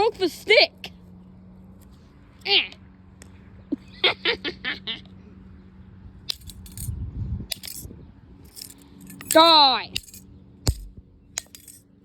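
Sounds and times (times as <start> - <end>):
metal handcuffs clinking: 6.3 - 7.9, 8.5 - 11.9
handcuffs scraping rattle: 6.3 - 11.9.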